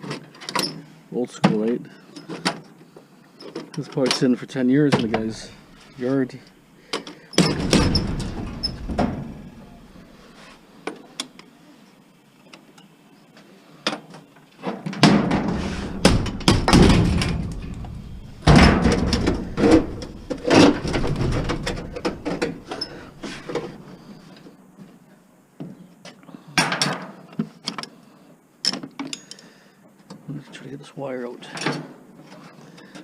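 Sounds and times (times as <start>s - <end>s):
metal clanking and scraping: 5.0s - 6.0s, 7.4s - 10.4s, 15.0s - 24.0s
metal parts clicking and knocking: 15.0s - 23.7s.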